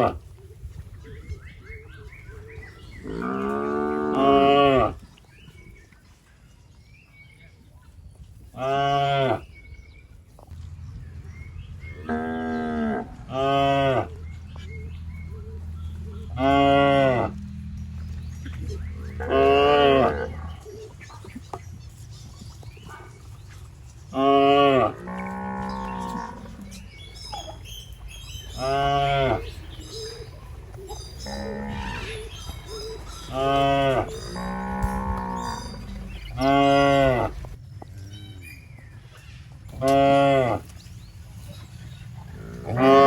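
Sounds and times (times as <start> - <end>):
cattle mooing: 3.0 - 5.0, 12.0 - 20.6, 24.2 - 26.8, 28.6 - 29.7, 31.1 - 38.2, 42.3 - 43.0
steady low drone: 10.5 - 21.0.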